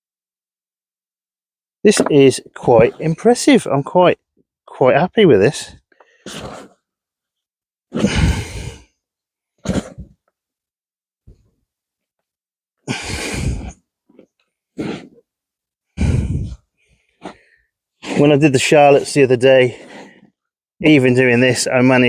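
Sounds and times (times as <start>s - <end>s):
person breathing heavily: 8.0s - 9.0s, 12.8s - 13.8s, 16.0s - 18.2s.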